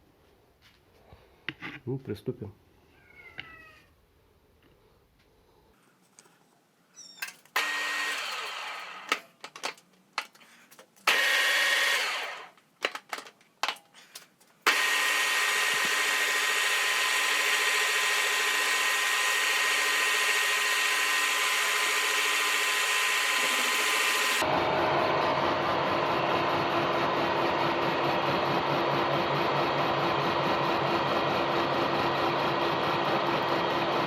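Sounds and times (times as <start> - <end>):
milling machine whine: 7.6 - 9.2, 11.1 - 12.5, 14.7 - 34.0
clicks and knocks: 9.1 - 11.0, 12.6 - 14.6.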